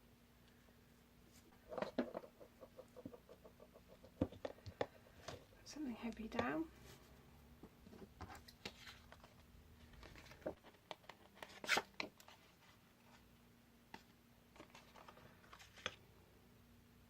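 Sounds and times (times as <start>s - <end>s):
paper rustling: 8.2s - 12.7s.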